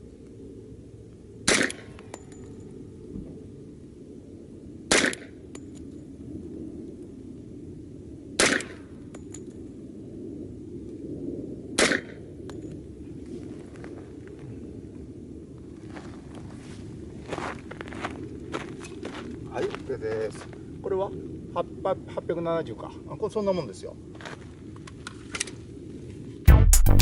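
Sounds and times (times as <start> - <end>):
suppressed pistol shots: 1.4 - 2.1, 4.9 - 5.3, 8.4 - 8.9, 11.8 - 12.2.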